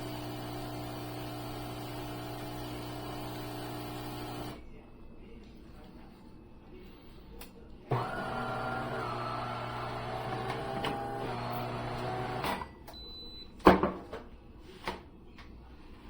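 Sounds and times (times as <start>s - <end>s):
espresso machine humming: 0.0s - 4.6s, 7.9s - 12.4s.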